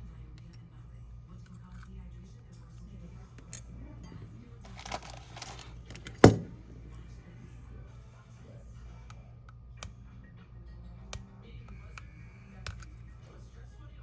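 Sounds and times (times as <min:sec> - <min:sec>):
steady low hum: 0:00.0 - 0:14.0
handling rustle: 0:04.7 - 0:06.6
hard object knocking on bench: 0:06.0 - 0:06.6.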